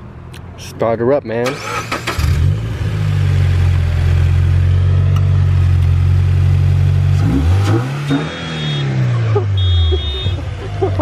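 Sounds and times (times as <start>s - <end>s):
car engine running and revving: 1.9s - 11.0s
high electronic tone: 8.1s - 10.6s.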